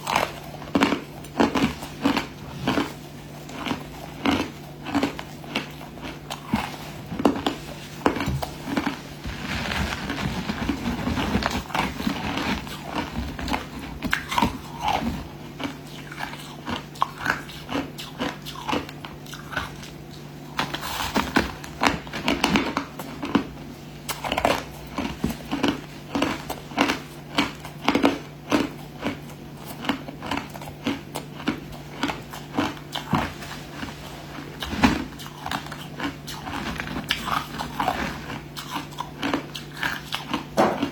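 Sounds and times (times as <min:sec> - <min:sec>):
ice crunching being chewed: 0:00.0 - 0:40.9.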